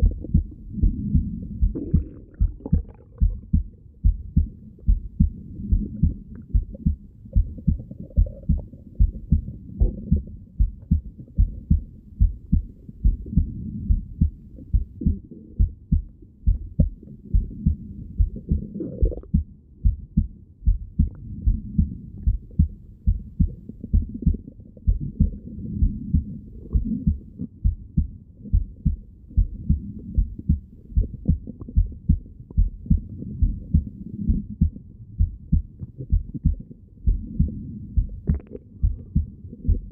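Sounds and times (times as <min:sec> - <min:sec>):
heartbeat through stethoscope: 0:00.0 - 0:39.9.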